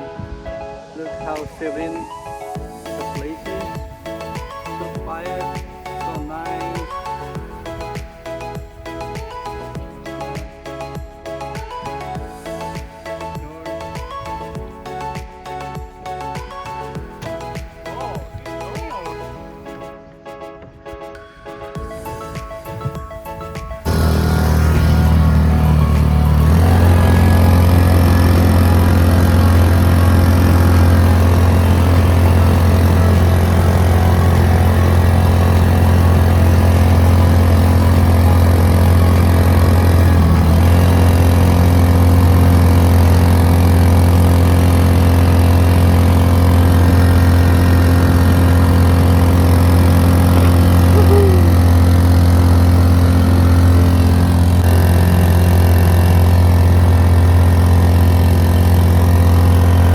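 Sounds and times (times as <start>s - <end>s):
motor humming: 23.8s - 59.9s.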